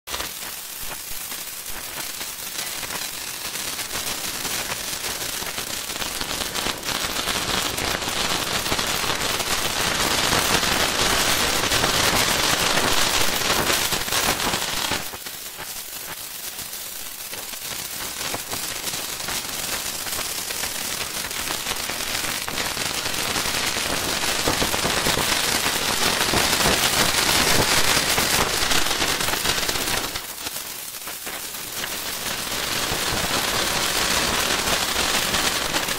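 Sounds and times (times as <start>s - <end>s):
electric sizzle crackling: 0.1s - 6.9s, 17.0s - 35.9s.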